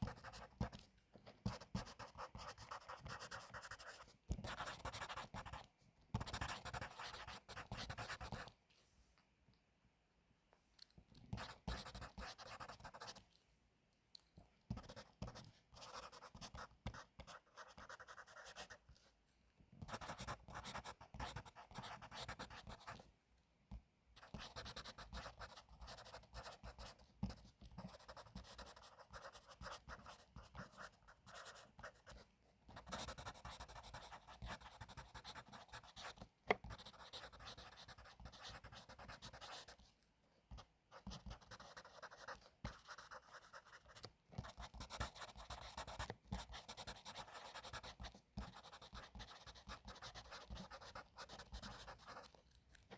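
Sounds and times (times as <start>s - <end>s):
pencil scratching on paper: 0.0s - 0.8s, 1.4s - 8.5s, 11.3s - 13.2s, 14.7s - 19.1s, 19.8s - 23.0s, 24.2s - 39.9s, 40.5s - 52.4s.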